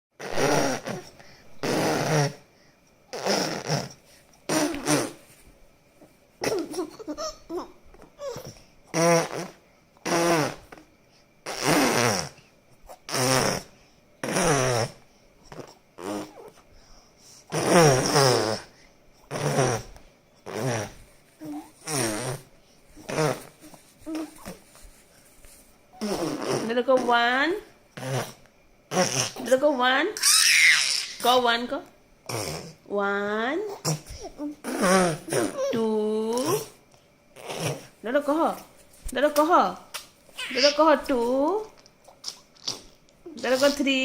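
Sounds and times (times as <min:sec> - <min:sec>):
child blowing raspberries: 0:00.2 - 0:02.4, 0:03.1 - 0:05.3, 0:08.9 - 0:10.8, 0:11.4 - 0:12.4, 0:13.0 - 0:16.5, 0:17.5 - 0:25.0, 0:26.0 - 0:26.7.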